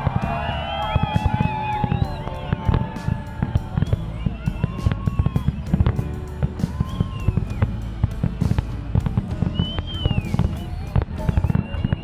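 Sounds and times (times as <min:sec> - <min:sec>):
fireworks booming and cracking: 0:00.0 - 0:12.0
firework whistles bending in pitch: 0:00.4 - 0:06.0, 0:06.6 - 0:08.0, 0:09.3 - 0:12.0.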